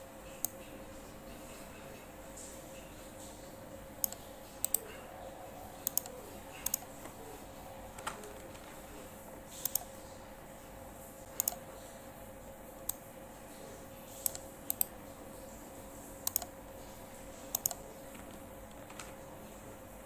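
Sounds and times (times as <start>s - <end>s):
faint steady hum: 0.0s - 20.0s
computer mouse clicks: 4.0s - 5.0s, 5.8s - 7.2s, 9.6s - 9.9s, 11.3s - 11.6s, 12.8s - 13.0s, 14.2s - 14.9s, 16.2s - 16.6s, 17.5s - 19.2s.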